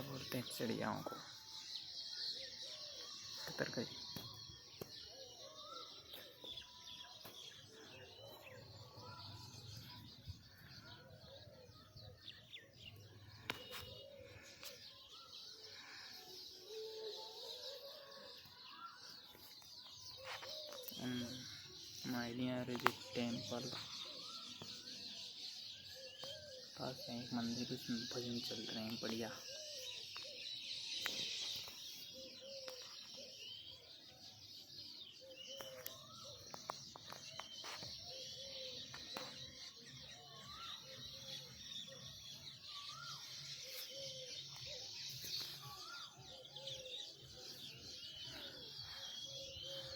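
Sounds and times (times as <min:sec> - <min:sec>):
small birds chirping: 0:00.0 - 0:49.9
distant devotional singing: 0:04.2 - 0:25.4.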